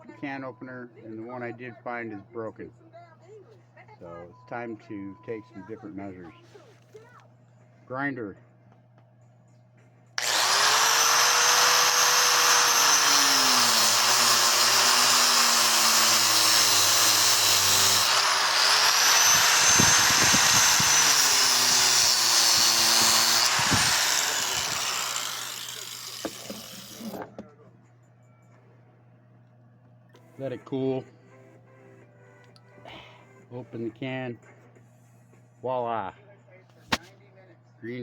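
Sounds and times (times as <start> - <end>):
angle grinder cutting metal: 10.2 - 27.2.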